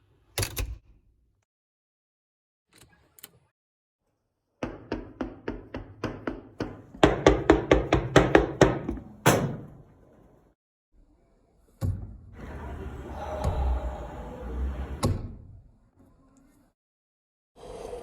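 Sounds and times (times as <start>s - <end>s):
rapid sharp knocks: 4.9s - 9.6s.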